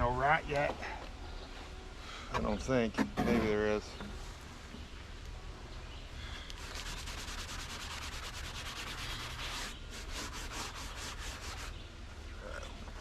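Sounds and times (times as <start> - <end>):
brush sweeping sawdust off board: 6.6 - 11.8.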